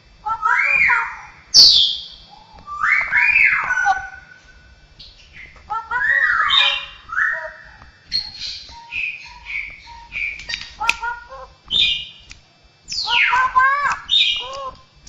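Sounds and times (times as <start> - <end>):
loud downward-sweeping bird call: 0.4 - 12.3, 12.9 - 14.8
bird singing whistled notes: 0.5 - 10.8, 11.7 - 12.3, 12.9 - 14.6
sharp click: 7.8 - 11.1, 11.7 - 14.9.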